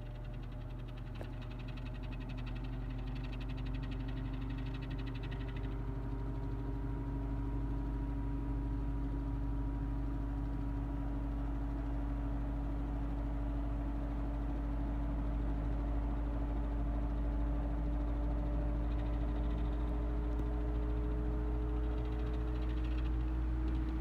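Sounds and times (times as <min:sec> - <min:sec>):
electric motor hum: 0:09.0 - 0:24.0.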